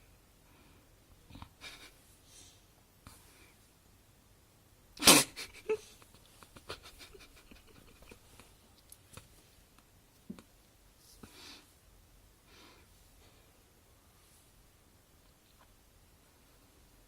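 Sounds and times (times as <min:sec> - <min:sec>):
soft breath: 0:02.0 - 0:03.8, 0:11.0 - 0:11.8, 0:12.4 - 0:14.6.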